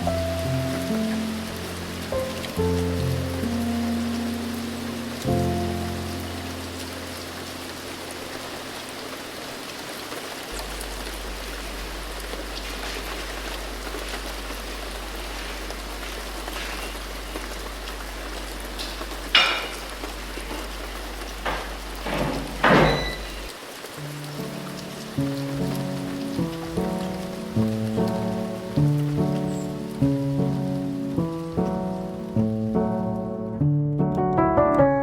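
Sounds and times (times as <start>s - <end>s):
steady rain pattering: 0.0s - 34.8s
low steady hum: 10.5s - 19.3s.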